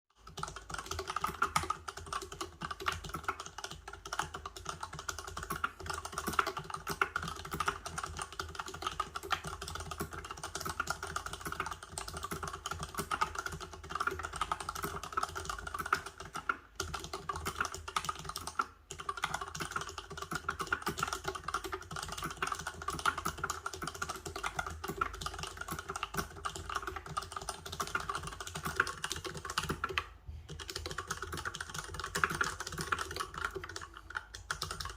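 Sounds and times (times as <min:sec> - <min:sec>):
typing on mechanical keyboard: 0:00.2 - 0:34.9.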